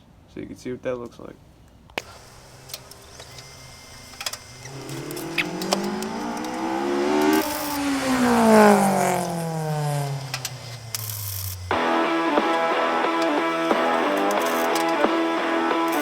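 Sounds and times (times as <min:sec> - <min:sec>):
sharp clicks: 0:02.0 - 0:08.1, 0:08.8 - 0:11.7, 0:12.4 - 0:16.0
vehicle engine revving: 0:02.0 - 0:16.0.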